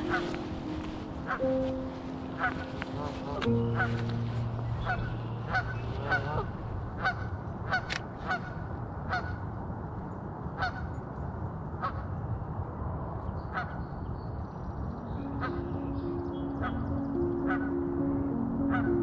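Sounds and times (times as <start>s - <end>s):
geese honking: 0.0s - 9.8s, 10.6s - 11.2s, 15.2s - 19.0s
soft background music: 0.0s - 9.8s, 14.8s - 19.0s.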